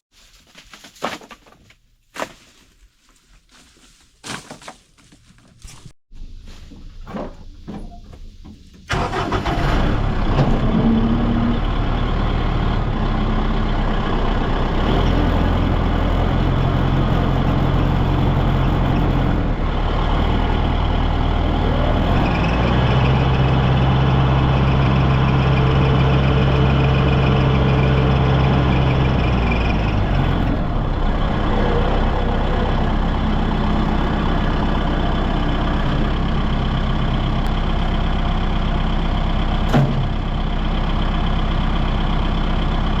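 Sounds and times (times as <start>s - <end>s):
vehicle engine revving: 9.0s - 36.2s.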